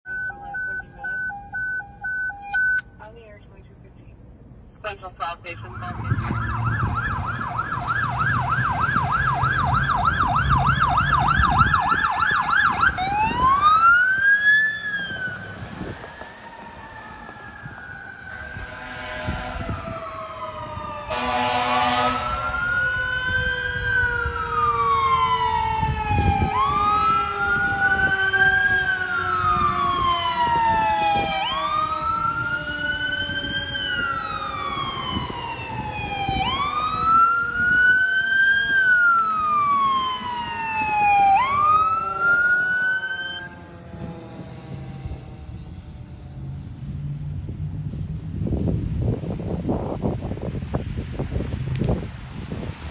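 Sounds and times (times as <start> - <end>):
fire engine siren yelp and wail: 0.0 - 3.1, 5.2 - 52.9
second siren tone falling: 5.6 - 14.0, 38.6 - 45.9
air horn blast: 18.3 - 20.3, 21.0 - 22.7, 41.8 - 42.8.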